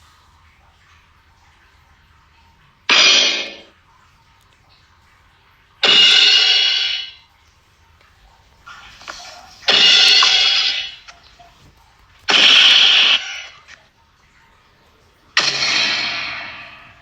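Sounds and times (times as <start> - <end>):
cartoon metallic crash: 2.9 - 3.7, 5.8 - 7.1, 9.7 - 11.0, 15.4 - 17.0.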